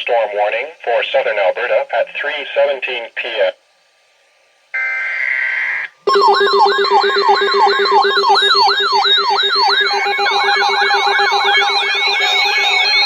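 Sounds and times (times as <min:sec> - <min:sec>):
buzzing digital data tones: 0:06.1 - 0:13.0
siren-like attention tone: 0:06.1 - 0:13.0
steady tones: 0:06.1 - 0:13.0.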